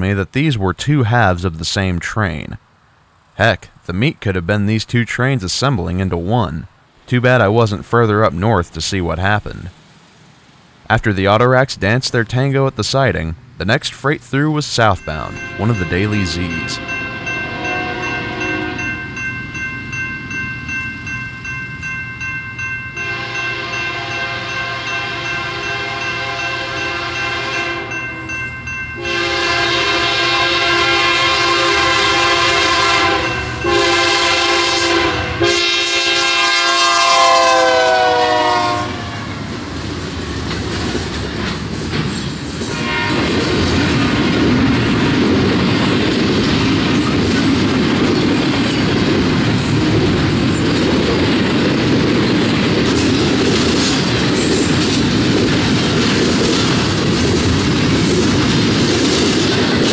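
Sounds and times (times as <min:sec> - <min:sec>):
train rumbling past: 0:14.8 - 0:59.9
train horn blasts: 0:15.3 - 0:19.0, 0:23.0 - 0:28.0, 0:29.0 - 0:39.4, 0:42.7 - 0:43.3
wheels clacking over rail joints: 0:39.4 - 0:59.9.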